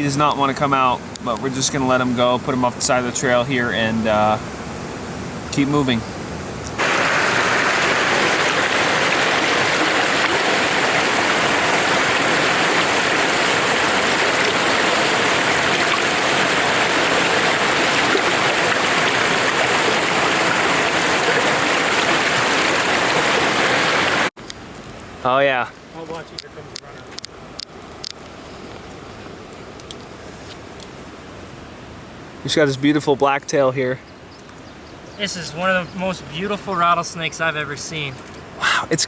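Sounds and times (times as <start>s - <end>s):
stream water flowing: 0.1s - 25.1s, 35.0s - 39.0s.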